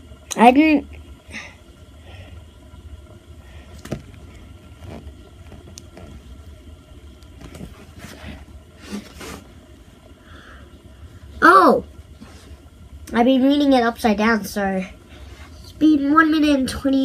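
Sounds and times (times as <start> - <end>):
fidget spinner whirring: 0.0 - 17.0
soft rustle: 3.8 - 6.6.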